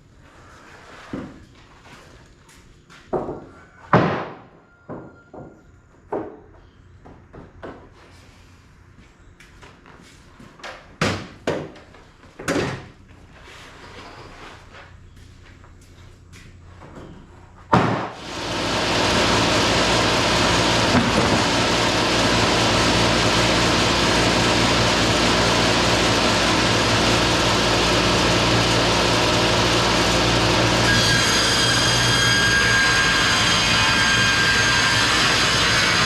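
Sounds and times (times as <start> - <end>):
band sawmill sawing wood: 18.2 - 36.0.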